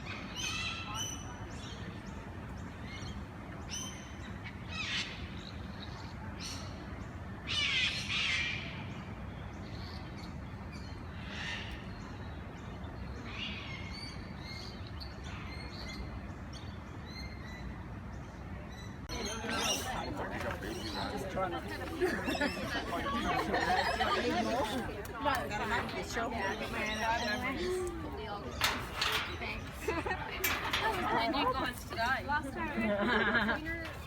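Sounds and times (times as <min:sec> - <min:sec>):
low outdoor rumble: 0:17.5 - 0:34.0.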